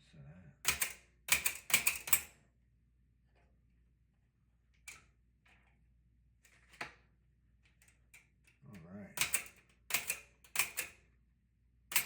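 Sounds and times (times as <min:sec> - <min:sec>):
toy typewriter key strike: 0:00.7 - 0:02.3, 0:09.2 - 0:11.0
typewriter mechanism clicks: 0:00.7 - 0:02.3, 0:09.2 - 0:11.0.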